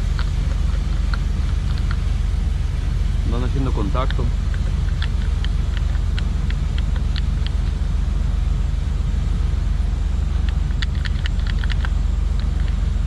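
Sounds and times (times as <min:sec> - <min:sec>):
steady low rumble: 0:00.0 - 0:13.0
small hard parts clicking: 0:04.0 - 0:07.6, 0:10.4 - 0:12.8.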